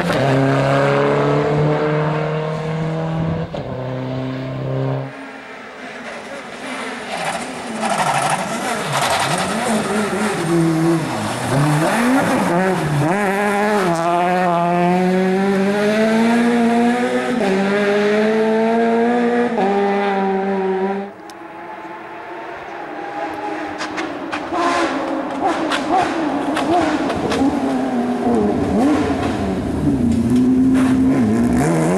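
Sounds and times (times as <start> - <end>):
rally car engine revving: 0.0 - 31.9.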